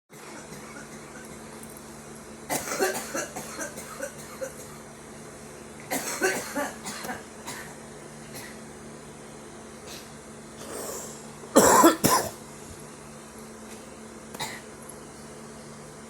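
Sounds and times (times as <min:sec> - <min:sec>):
girl coughing: 0:02.5 - 0:04.8, 0:05.9 - 0:07.7, 0:11.5 - 0:12.4, 0:14.4 - 0:14.7.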